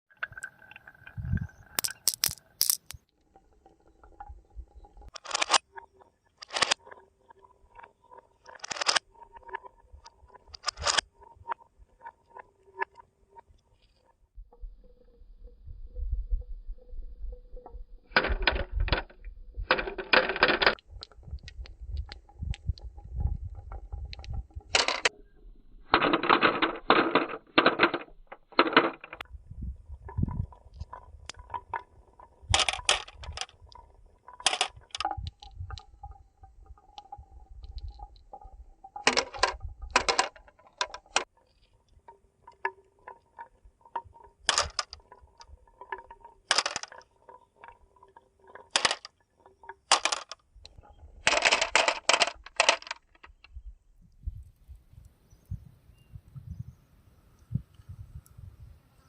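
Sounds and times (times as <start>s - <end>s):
marbles clacking: 0.2s - 3.0s, 19.7s - 25.1s, 25.9s - 29.2s, 30.1s - 41.7s, 42.4s - 53.5s
rattling clicks of marbles: 0.2s - 3.0s, 5.1s - 5.6s, 6.4s - 6.9s, 7.8s - 11.6s, 18.1s - 25.1s, 25.9s - 29.2s, 30.1s - 53.6s
marbles rolling down marble run: 1.8s - 3.0s, 21.4s - 25.1s, 30.1s - 36.2s, 36.8s - 41.3s, 42.5s - 53.5s.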